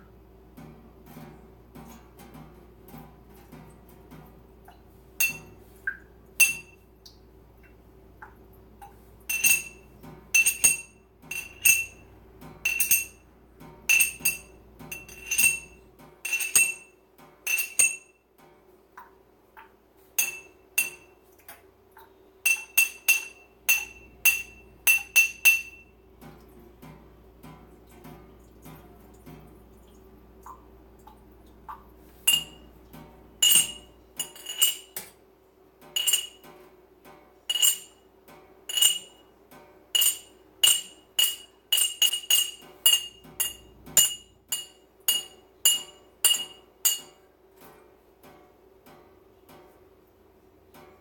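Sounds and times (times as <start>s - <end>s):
glassy clinks: 5.2s - 5.6s, 9.3s - 9.8s, 12.7s - 13.2s, 13.9s - 16.9s, 17.5s - 18.1s, 32.3s - 32.6s, 33.4s - 35.0s, 36.0s - 36.4s, 37.5s - 37.9s, 40.0s - 47.1s.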